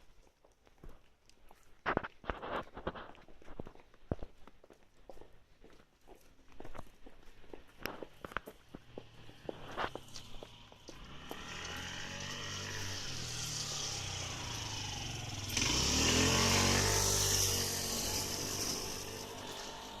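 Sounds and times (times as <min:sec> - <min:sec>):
wheels hissing on rail: 0:09.4 - 0:20.0
electric train passing: 0:11.0 - 0:20.0.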